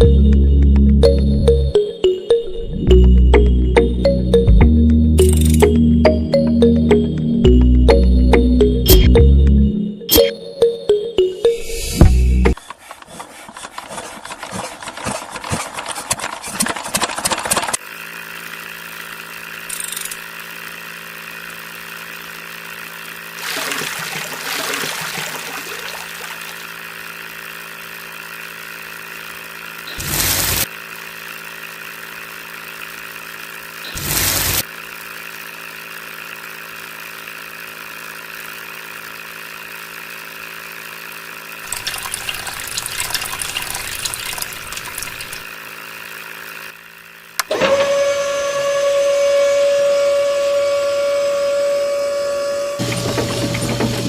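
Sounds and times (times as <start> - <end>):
rasping scraping: 12.6 - 17.8
small electric motor humming: 17.7 - 54.0.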